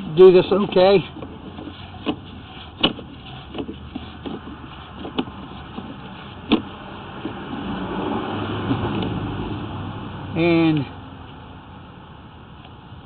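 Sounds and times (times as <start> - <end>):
cable clicks and knocks: 2.8 - 7.4.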